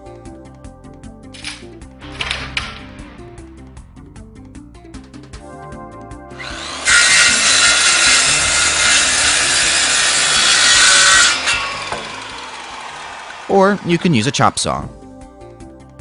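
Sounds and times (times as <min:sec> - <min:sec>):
background music: 0:00.0 - 0:16.0
power saw cutting board: 0:01.4 - 0:03.7, 0:06.3 - 0:14.6.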